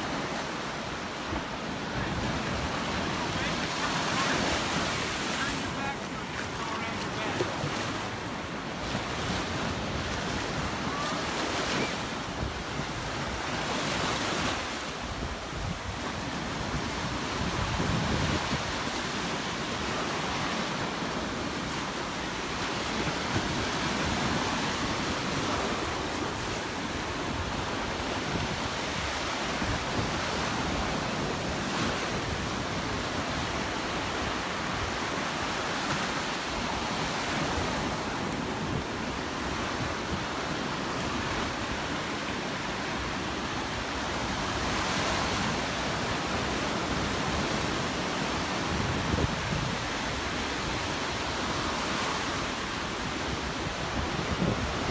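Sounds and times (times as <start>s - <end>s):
surf washing onto beach: 0.0s - 54.9s
wind buffeting microphone: 14.0s - 18.9s, 48.6s - 50.2s.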